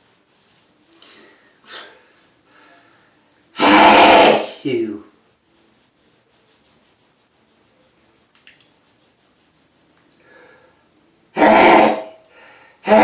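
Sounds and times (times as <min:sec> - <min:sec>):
faint breathing: 0:01.0 - 0:03.4, 0:10.2 - 0:11.0, 0:12.2 - 0:12.8
man sneezing loudly: 0:03.6 - 0:04.7, 0:11.4 - 0:12.2
intake of breath: 0:10.2 - 0:10.8, 0:12.2 - 0:12.8.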